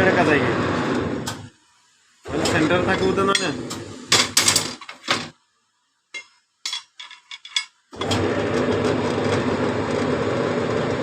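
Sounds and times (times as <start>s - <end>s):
workshop machine running: 0.0s - 5.4s, 7.4s - 11.0s.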